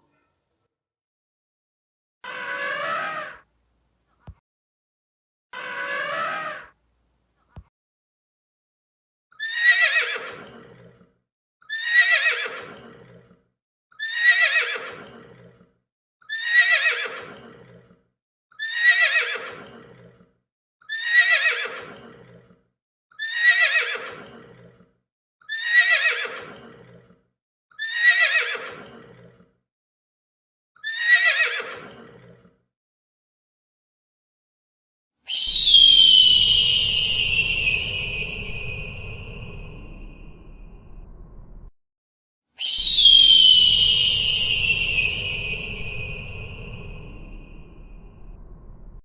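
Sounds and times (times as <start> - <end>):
horse whinnying: 2.2 - 3.4, 9.4 - 11.1, 11.7 - 13.3, 14.0 - 15.6, 16.3 - 17.9, 18.6 - 20.2, 20.9 - 22.5, 23.2 - 24.8, 25.5 - 27.1, 27.8 - 29.4, 30.8 - 32.4, 35.3 - 38.6.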